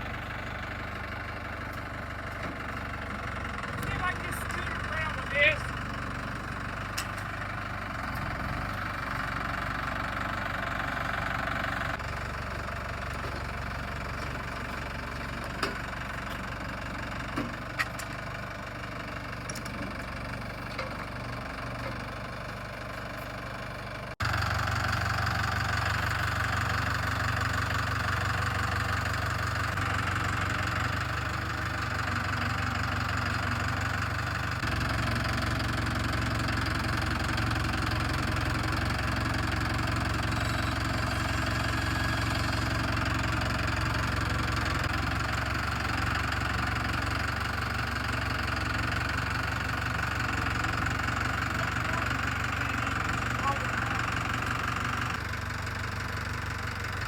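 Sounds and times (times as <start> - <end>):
tractor engine running: 0.0 - 57.0.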